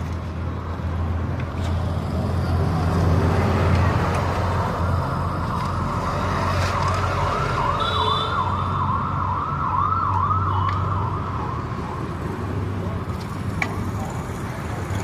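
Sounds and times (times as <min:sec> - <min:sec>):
low traffic rumble: 0:00.0 - 0:15.0
siren yelping: 0:04.5 - 0:12.3.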